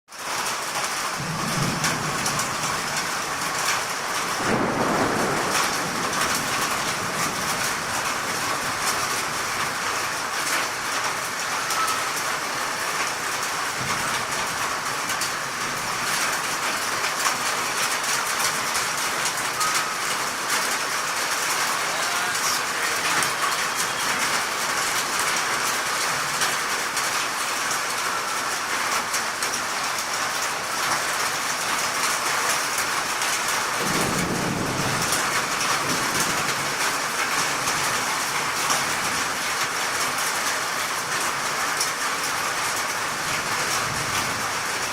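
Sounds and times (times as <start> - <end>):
heavy rain falling: 0.1 - 44.9.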